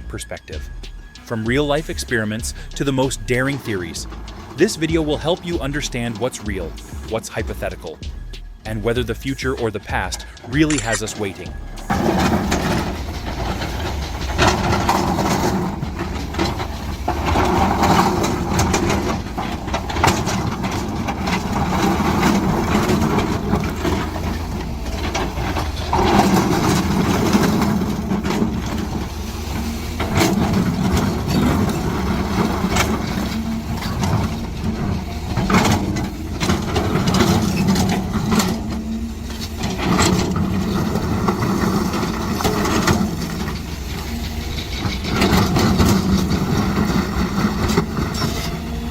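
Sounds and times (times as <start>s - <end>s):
diesel engine rumble: 0.0s - 48.9s
knocks and clanks: 0.0s - 48.9s.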